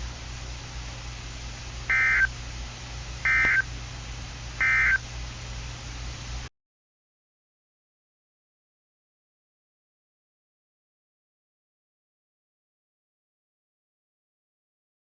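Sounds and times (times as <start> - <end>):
low hum and hiss: 0.0 - 6.5
digital data screech: 4.6 - 5.0.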